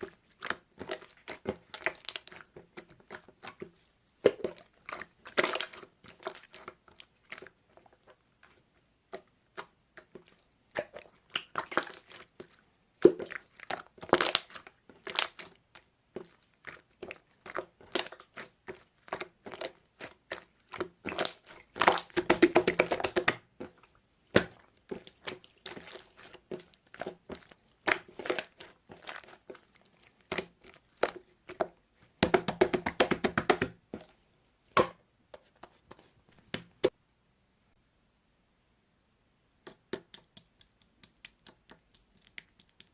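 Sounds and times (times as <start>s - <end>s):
slime squished by hand: 8.5s - 34.1s.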